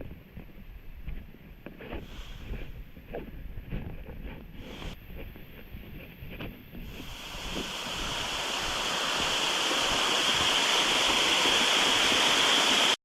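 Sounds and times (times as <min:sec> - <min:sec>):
waterfall rushing: 0:06.9 - 0:13.0.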